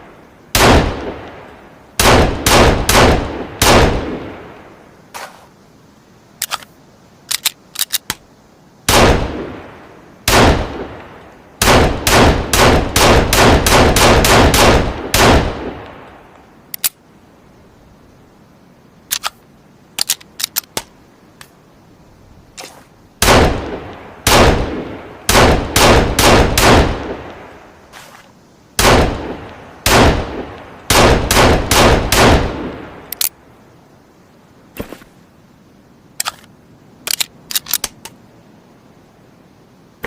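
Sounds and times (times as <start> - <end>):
pistol shots echoing: 23.2 - 27.2, 28.8 - 32.8.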